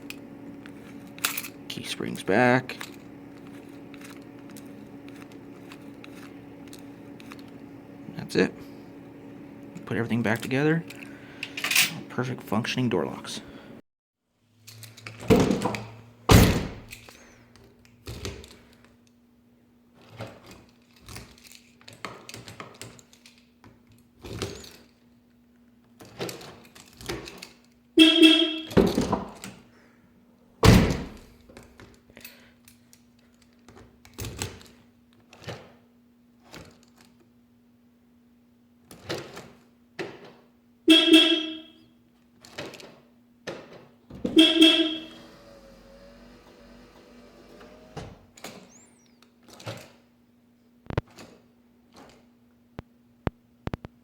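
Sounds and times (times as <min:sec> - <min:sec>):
car alarm beep: 0:28.0 - 0:28.7, 0:40.9 - 0:41.8, 0:44.4 - 0:45.2.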